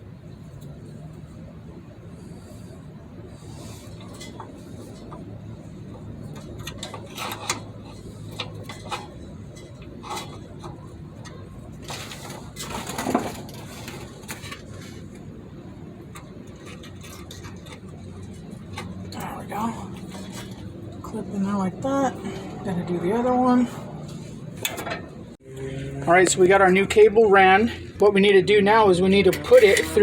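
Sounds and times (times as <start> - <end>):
steady low hum: 0.0 - 30.0
metal scraping clatter: 3.4 - 15.3, 16.1 - 25.4, 29.2 - 30.0.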